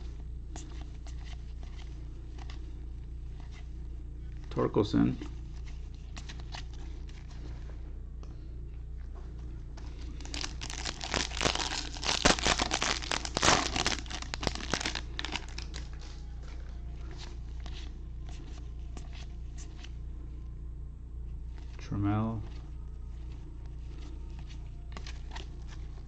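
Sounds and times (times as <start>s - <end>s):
wrapper being torn and crumpled: 10.0s - 16.0s.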